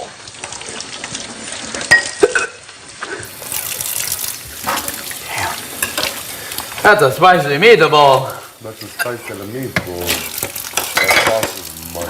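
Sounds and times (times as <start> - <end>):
steady hiss in hot pan: 0.0 - 12.0
cookware clinking: 4.6 - 11.7.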